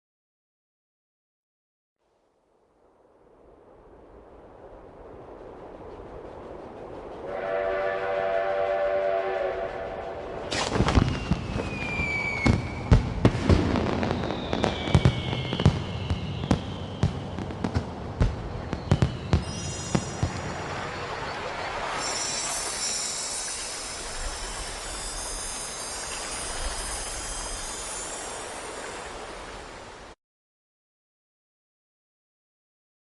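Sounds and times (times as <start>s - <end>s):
steam train whistle: 7.2s - 10.6s
falling whistles: 7.2s - 29.6s
fireworks bursts and pops: 10.5s - 29.0s
high ringing shimmer: 19.4s - 21.0s, 22.0s - 29.4s.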